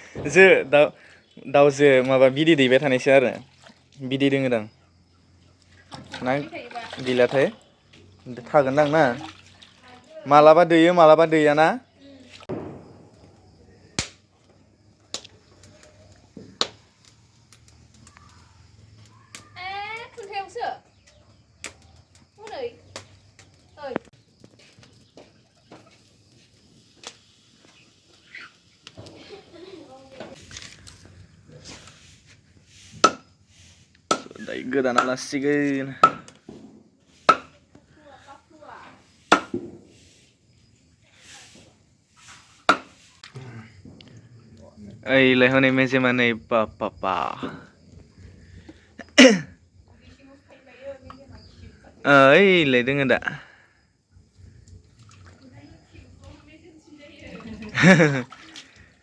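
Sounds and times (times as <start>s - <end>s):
sharp knocks: 39.3s - 39.8s.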